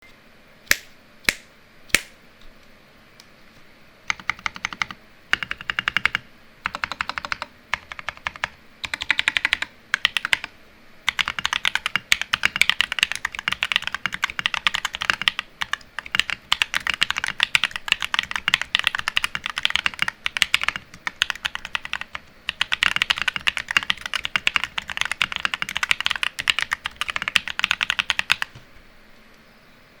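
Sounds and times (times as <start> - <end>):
mechanical keyboard typing: 4.1 - 10.5, 11.1 - 28.6.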